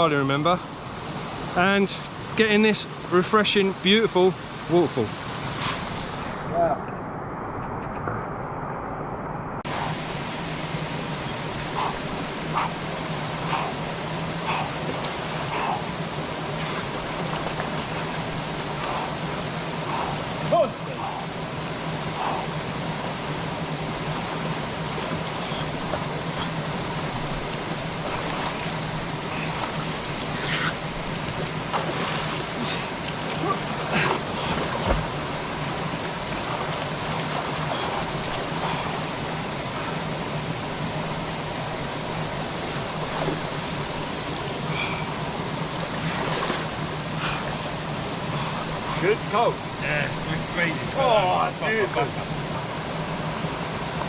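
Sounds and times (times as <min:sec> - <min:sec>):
waterfall and stream rushing: 0:00.0 - 0:54.0
faint high chirp: 0:25.4 - 0:25.8.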